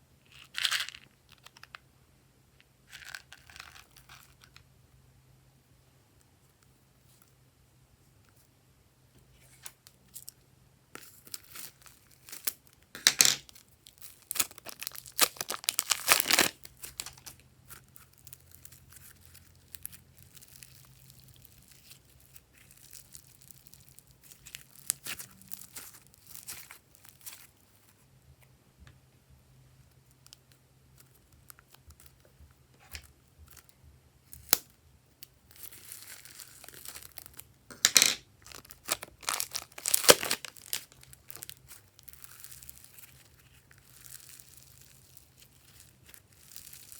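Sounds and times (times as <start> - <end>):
slime crackling and tearing: 13.8 - 27.5, 38.4 - 46.9.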